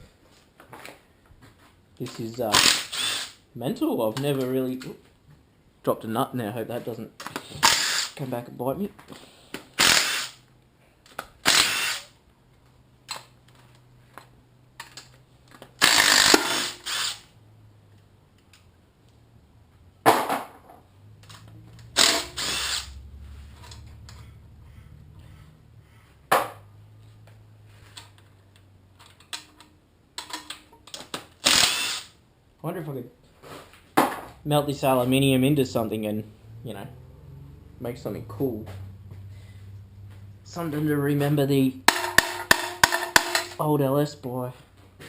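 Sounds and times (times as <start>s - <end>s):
cordless power tool bursts: 2.6s - 3.4s, 7.5s - 8.2s, 9.8s - 10.4s, 11.4s - 12.2s, 15.8s - 17.3s, 22.0s - 23.0s, 31.4s - 32.2s
faint low hum: 20.8s - 30.9s.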